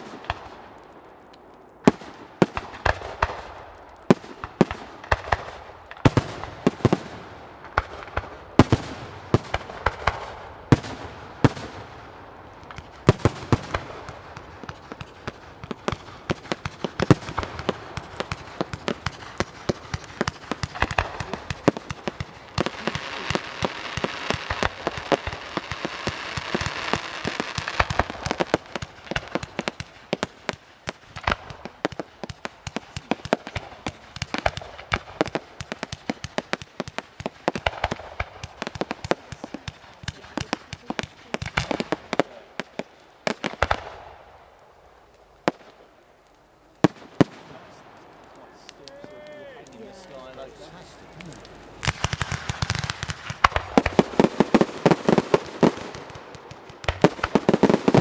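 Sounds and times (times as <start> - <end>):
crackle of rapid small pops: 0.0 - 58.0
firework shells bursting: 12.6 - 44.2, 46.8 - 58.0.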